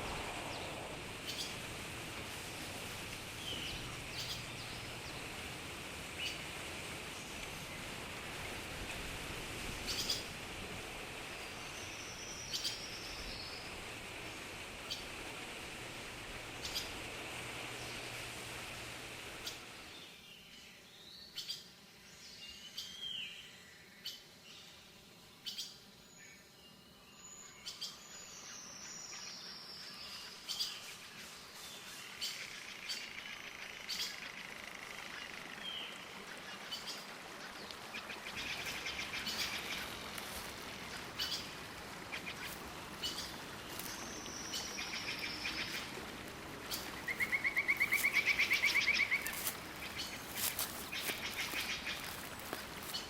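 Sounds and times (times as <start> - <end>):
birds chirping and calling: 32.1 - 53.0.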